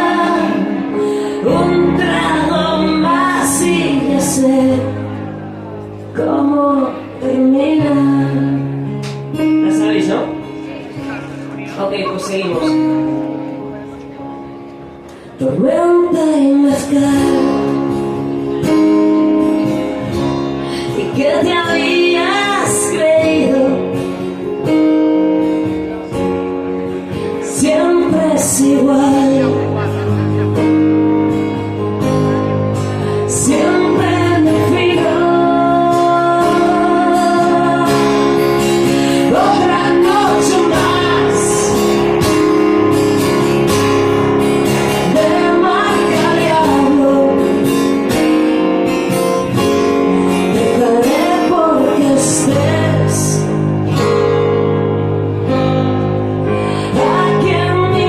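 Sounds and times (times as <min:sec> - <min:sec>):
person singing: 0:00.0 - 0:05.6, 0:27.3 - 0:30.7, 0:32.9 - 0:42.5, 0:44.7 - 0:48.4, 0:50.1 - 0:53.6, 0:55.6 - 0:58.0
live band playing: 0:00.0 - 0:58.0.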